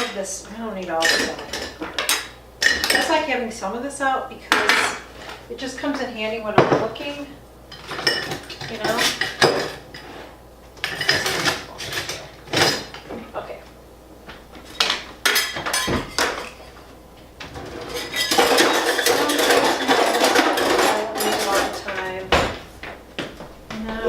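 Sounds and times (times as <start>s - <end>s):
dishes and cutlery clinking: 1.0s - 3.2s, 7.7s - 10.2s, 10.8s - 13.2s, 14.7s - 16.8s, 17.5s - 22.6s.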